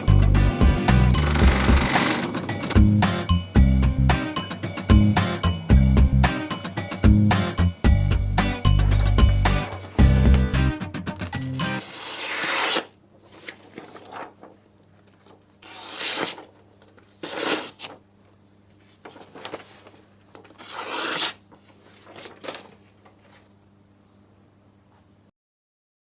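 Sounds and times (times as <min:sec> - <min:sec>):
electrical hum: 0:00.0 - 0:04.2
scraping strokes: 0:11.6 - 0:18.0, 0:18.7 - 0:23.5.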